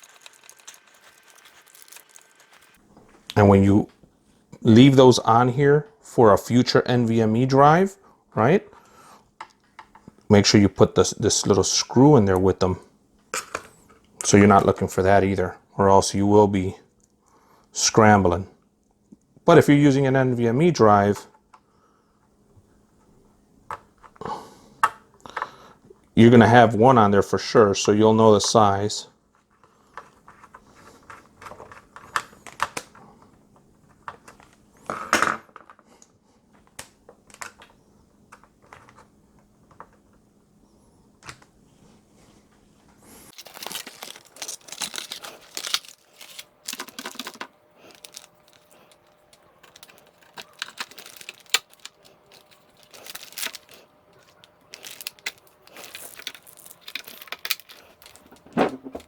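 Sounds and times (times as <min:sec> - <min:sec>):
packaging crinkling and rustling: 0:00.0 - 0:03.3, 0:43.3 - 0:59.0.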